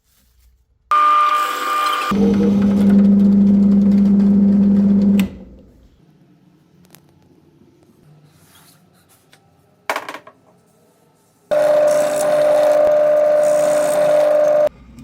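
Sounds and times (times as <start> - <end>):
power tool whining: 0.9 - 5.3, 11.5 - 14.7.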